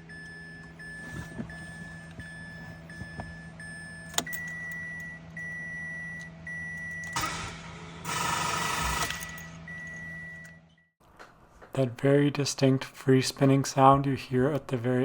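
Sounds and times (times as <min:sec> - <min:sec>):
dash warning beeps: 0:00.0 - 0:07.4, 0:09.4 - 0:10.9
starter motor whirring: 0:07.1 - 0:09.6.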